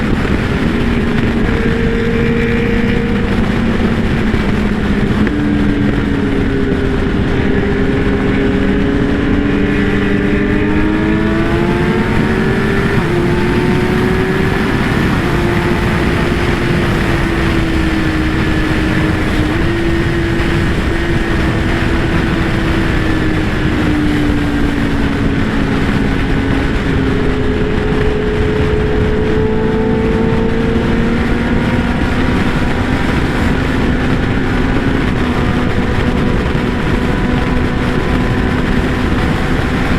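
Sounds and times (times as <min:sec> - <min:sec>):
motorcycle engine running: 0:00.0 - 0:39.9
wind rushing on microphone: 0:00.0 - 0:39.9.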